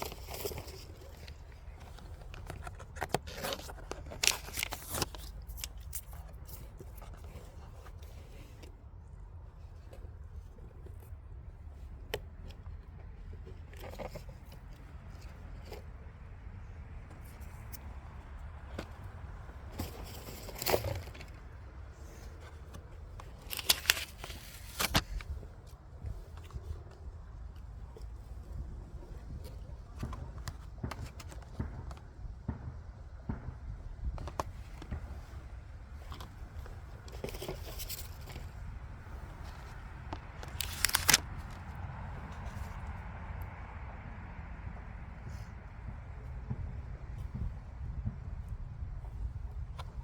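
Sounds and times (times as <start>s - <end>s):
packaging clicks and crinkles: 0.0s - 8.2s, 19.6s - 25.4s, 36.0s - 38.8s, 39.4s - 41.8s
low background noise: 0.0s - 50.0s.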